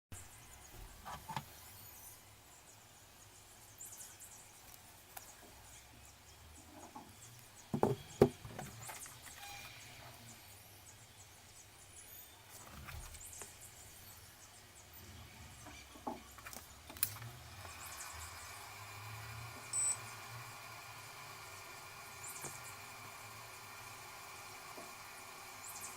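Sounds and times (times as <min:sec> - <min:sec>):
sharp knocks and clicks: 0:07.7 - 0:09.1.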